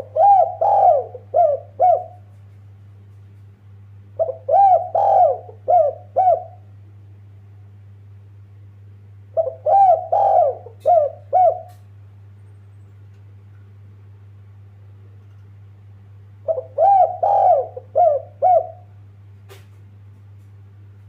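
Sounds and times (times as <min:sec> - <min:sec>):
dove cooing: 0:00.0 - 0:02.4, 0:04.2 - 0:06.7, 0:09.3 - 0:11.8, 0:16.4 - 0:18.9
steady low hum: 0:00.0 - 0:21.0.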